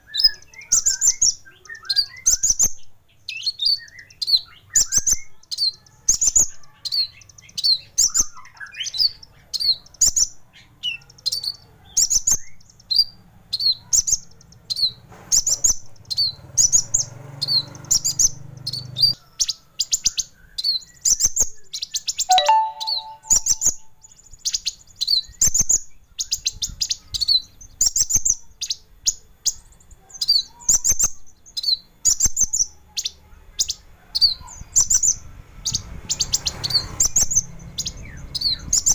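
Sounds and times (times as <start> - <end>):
sunbird singing high chirps: 0.0 - 28.9, 29.5 - 38.9.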